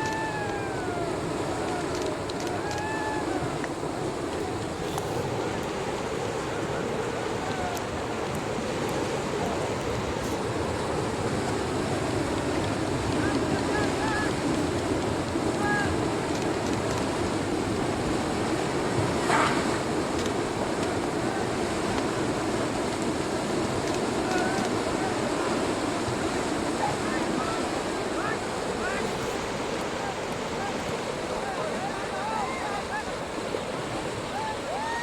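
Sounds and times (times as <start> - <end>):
faint high calls: 0.0 - 4.1
river water rushing: 0.0 - 35.0
wind: 0.0 - 35.0.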